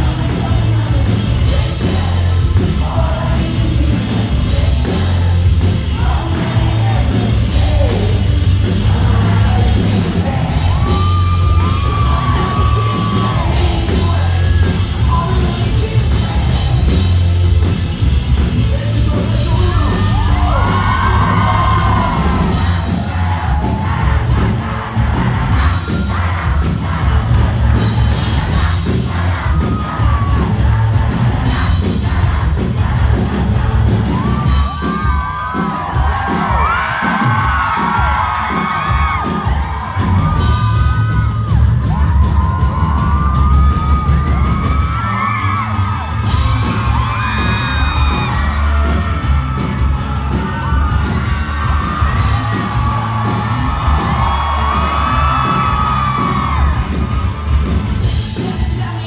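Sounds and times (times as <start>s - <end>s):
person singing: 0.0s - 17.0s, 58.1s - 59.0s
crowd yelling and whooping: 0.0s - 59.0s
indie rock band playing: 0.0s - 59.0s.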